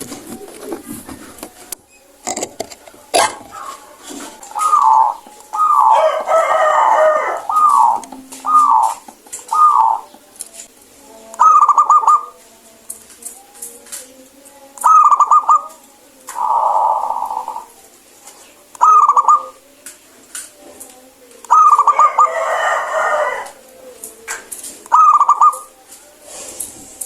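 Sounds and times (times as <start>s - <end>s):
rough bird calls: 3.2s - 10.2s, 16.3s - 17.8s
dove trilled cooing: 3.2s - 10.3s, 11.4s - 12.4s, 14.8s - 17.8s, 18.8s - 19.7s, 21.5s - 23.6s, 24.9s - 25.8s.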